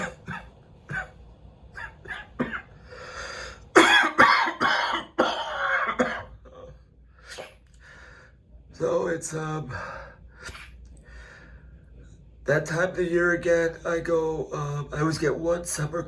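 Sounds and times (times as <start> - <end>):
person coughing: 0.0 - 1.2, 1.8 - 2.7, 3.8 - 7.6.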